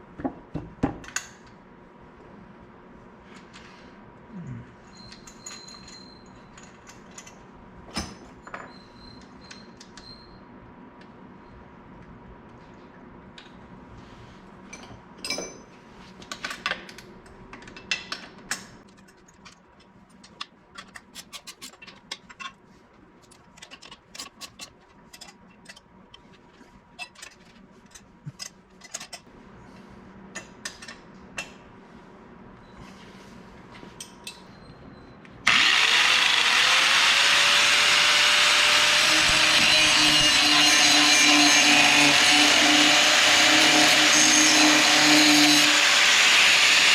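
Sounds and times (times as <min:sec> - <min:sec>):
hand tools clicking and knocking: 0:20.4 - 0:22.6, 0:23.3 - 0:25.9
power tool whining: 0:35.5 - 0:46.9.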